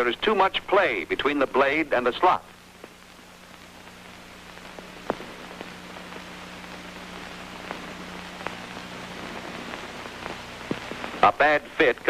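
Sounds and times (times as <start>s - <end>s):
film soundtrack hiss and hum: 0.0s - 12.0s
clicks and pops: 2.8s - 11.2s.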